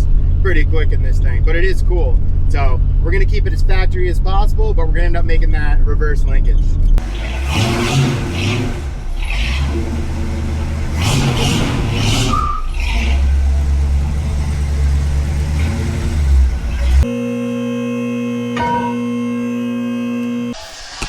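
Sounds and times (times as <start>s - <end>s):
car engine and exhaust revving: 6.8s - 17.3s.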